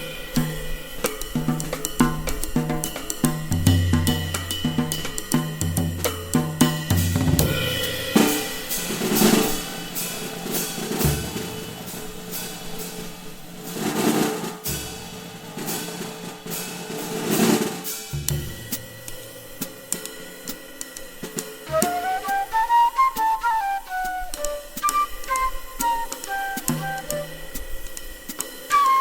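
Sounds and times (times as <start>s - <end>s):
bass drum strokes: 0.0s - 20.6s
cymbals: 0.0s - 29.0s
snare drum rolls: 0.0s - 29.0s.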